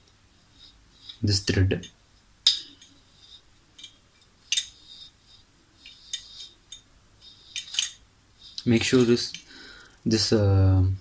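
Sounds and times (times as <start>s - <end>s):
light ticking and scraping: 0.0s - 10.1s
metal parts clinking: 3.8s - 4.8s, 7.5s - 8.0s.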